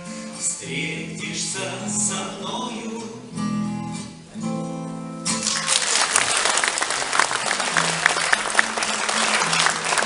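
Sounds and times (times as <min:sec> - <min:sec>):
audience applause: 0:05.4 - 0:10.0.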